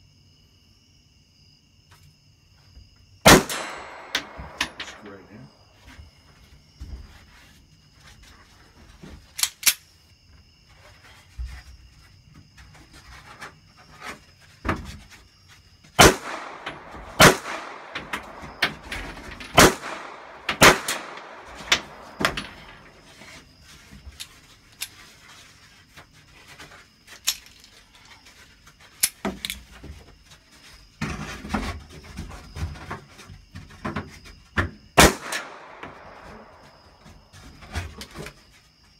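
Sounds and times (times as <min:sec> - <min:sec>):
gunshots: 0:03.3 - 0:05.3, 0:16.0 - 0:23.0, 0:35.0 - 0:36.6.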